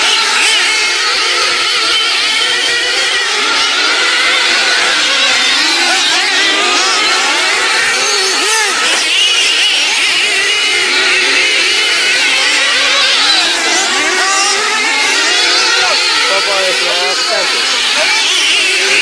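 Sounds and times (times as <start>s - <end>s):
racing engines revving: 0.0s - 19.0s.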